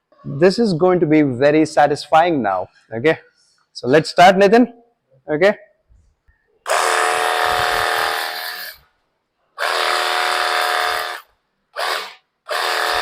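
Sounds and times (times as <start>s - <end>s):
pressure washer pump whine: 6.7s - 8.8s, 9.6s - 13.0s.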